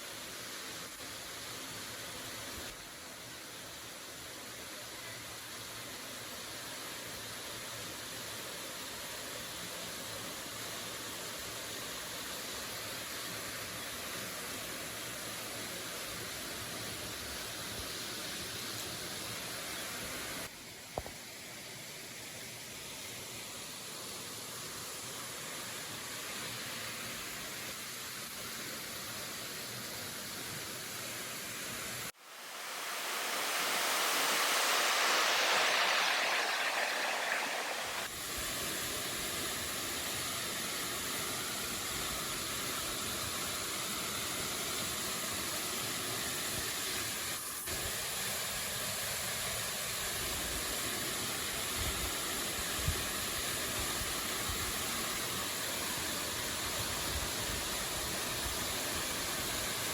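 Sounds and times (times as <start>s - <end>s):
waterfall rushing: 32.2s - 38.3s.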